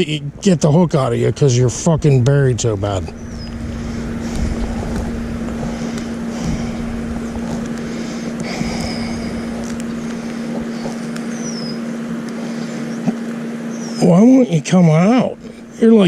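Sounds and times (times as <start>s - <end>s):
low hum: 0.0s - 16.0s
wind on microphone: 2.7s - 10.7s
faint high bird chirps: 3.1s - 3.6s, 10.7s - 11.9s, 13.7s - 14.2s.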